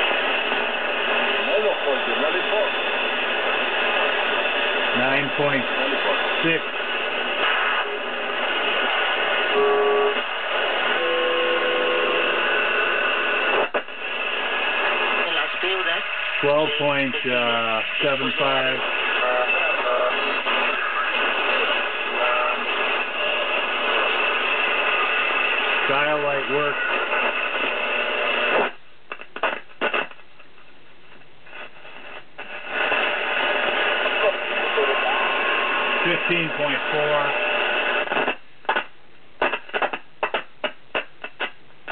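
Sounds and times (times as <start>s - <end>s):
crackles and pops: 0.0s - 41.9s
radio static hiss: 0.0s - 41.9s
radio whistle tones: 5.0s - 27.8s.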